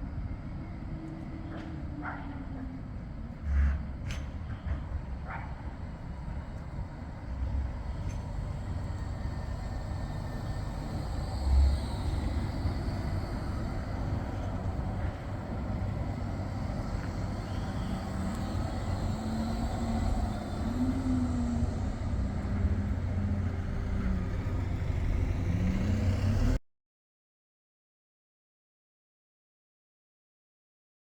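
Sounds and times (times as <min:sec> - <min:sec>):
vehicle low rumble: 0:00.0 - 0:26.6
wavering engine tone: 0:08.2 - 0:26.6.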